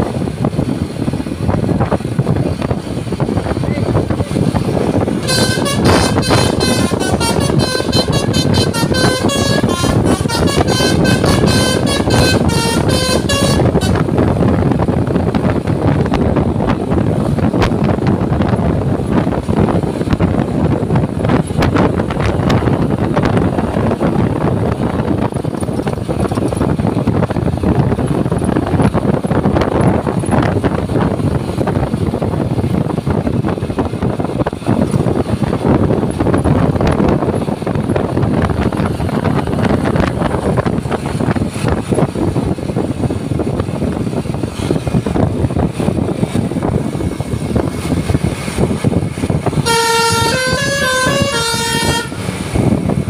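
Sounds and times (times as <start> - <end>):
steady rushing noise: 0.0 - 53.0
bus horn playing melody: 4.9 - 14.6, 49.2 - 53.0.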